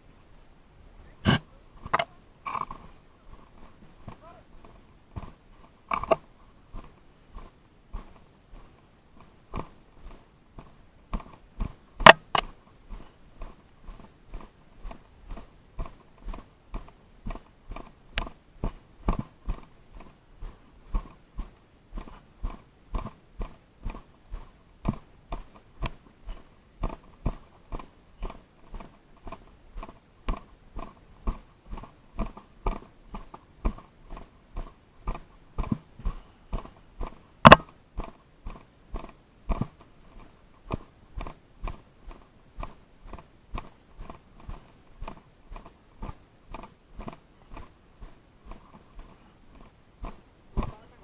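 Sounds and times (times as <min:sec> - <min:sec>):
footsteps walking: 0:01.3 - 0:51.0
sharp click: 0:37.5 - 0:37.8.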